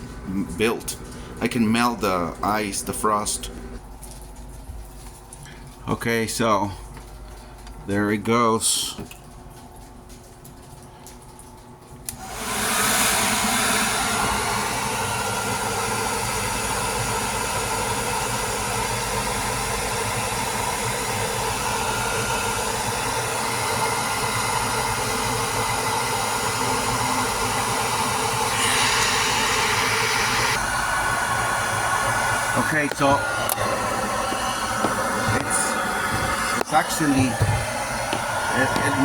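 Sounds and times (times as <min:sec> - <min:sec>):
hair dryer blowing through pipe: 0:12.1 - 0:39.0.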